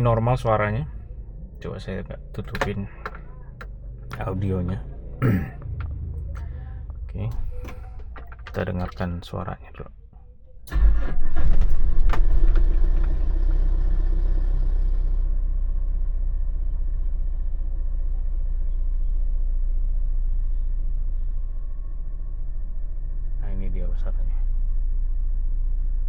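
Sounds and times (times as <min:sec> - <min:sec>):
car engine starting and idling: 0:00.0 - 0:26.0.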